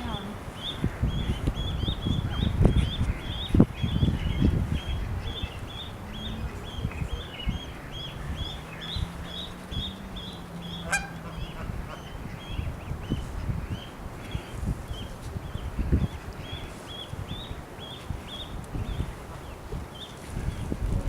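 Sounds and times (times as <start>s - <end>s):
low rumble: 0.0s - 13.8s
goslings peeping: 0.0s - 20.1s
goose honk: 8.7s - 12.6s.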